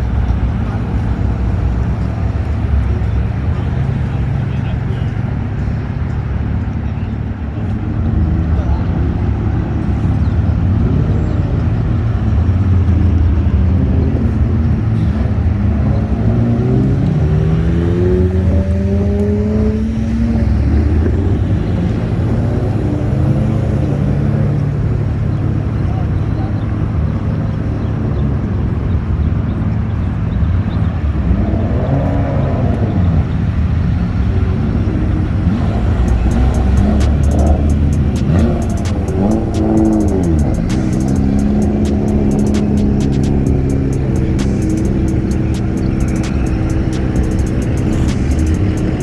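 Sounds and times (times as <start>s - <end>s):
car engine accelerating: 0.0s - 49.0s
sports car exhaust rumble: 0.0s - 49.0s.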